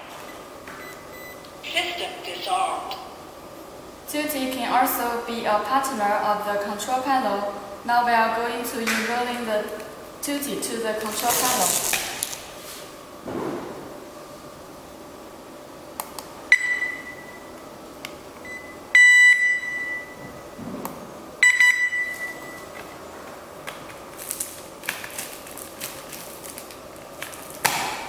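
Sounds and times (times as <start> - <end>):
alarm unit beeps: 0.0 - 3.1, 16.5 - 17.6, 18.4 - 20.6, 21.4 - 22.9.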